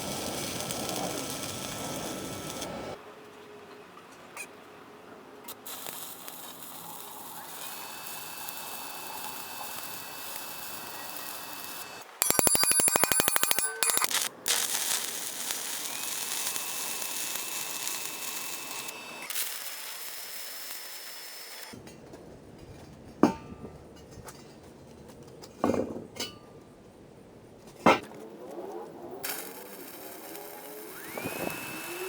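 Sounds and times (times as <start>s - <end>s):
arc welding frying hiss: 0.0s - 3.0s, 5.5s - 12.4s, 13.0s - 21.7s, 29.2s - 32.0s
rapid crackling buzz: 5.7s - 21.7s.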